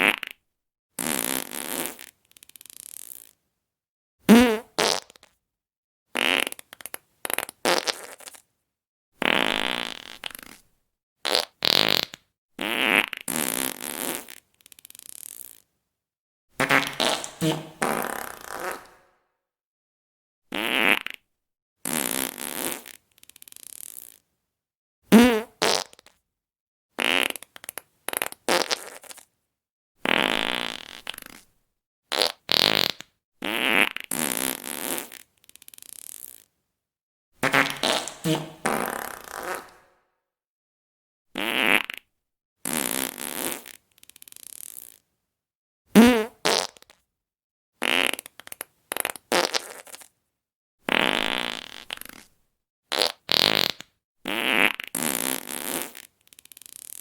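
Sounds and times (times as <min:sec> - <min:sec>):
fart sound effects: 0:00.0 - 0:00.3, 0:04.3 - 0:05.2, 0:16.6 - 0:19.1, 0:37.4 - 0:40.0, 0:41.4 - 0:42.0, 0:46.0 - 0:46.9.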